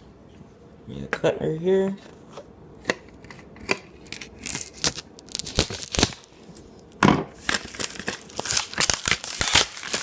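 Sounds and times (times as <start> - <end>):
wrapping rustling and crackling: 4.0 - 6.6, 7.4 - 10.0
knife cutting packaging: 7.4 - 10.0.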